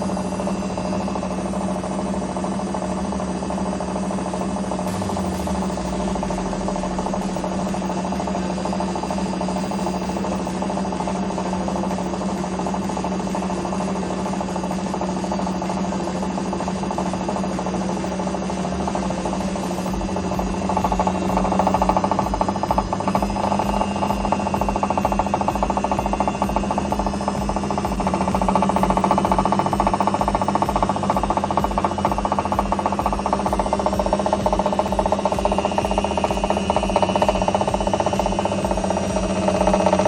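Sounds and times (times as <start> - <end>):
washing machine drum spinning: 0.0 - 40.0
low thumping rattle: 18.5 - 40.0.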